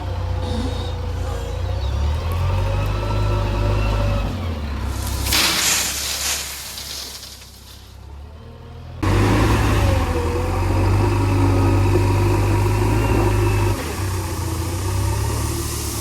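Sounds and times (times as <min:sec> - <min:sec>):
heavy diesel engine running: 0:00.0 - 0:16.0
short whine bending down: 0:04.8 - 0:08.1.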